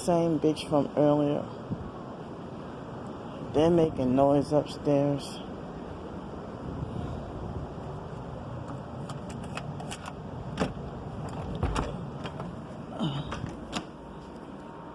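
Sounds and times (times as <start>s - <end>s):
steady low rumble: 0.0s - 14.9s
knocks and thumps from upstairs: 10.6s - 12.6s.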